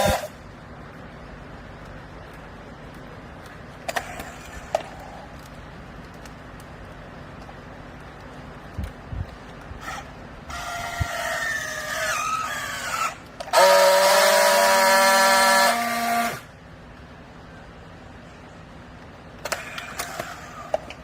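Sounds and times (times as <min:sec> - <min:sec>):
hydraulic baler whining: 0:00.0 - 0:00.4, 0:09.8 - 0:16.5.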